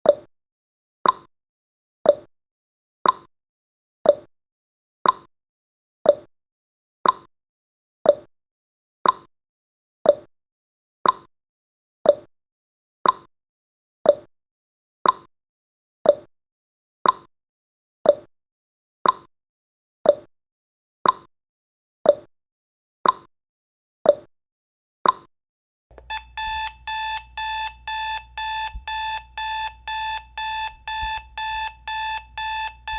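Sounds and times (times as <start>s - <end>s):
clock ticking: 25.9s - 32.9s
electronic alarm beeping: 26.0s - 32.9s.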